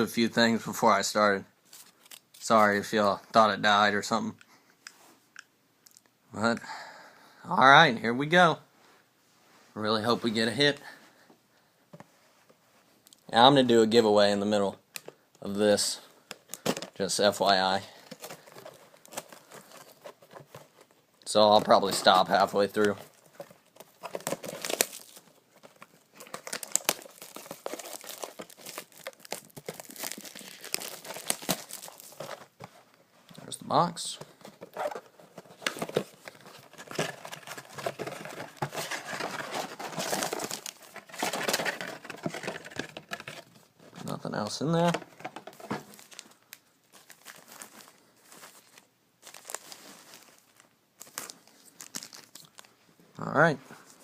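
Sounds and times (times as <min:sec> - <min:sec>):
shrink-wrap and cardboard crinkling: 0:16.3 - 0:52.8
sharp crackles of wrapping: 0:23.7 - 0:32.2.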